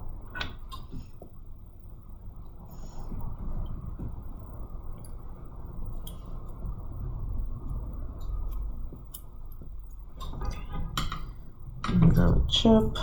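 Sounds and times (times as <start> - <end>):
low hum of bench equipment: 0.0 - 13.0.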